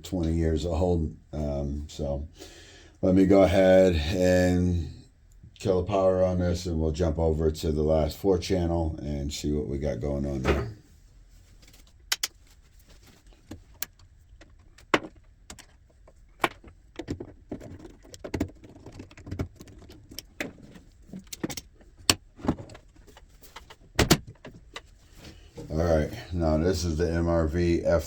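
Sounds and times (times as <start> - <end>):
cables and metal parts clattering: 12.8 - 26.3.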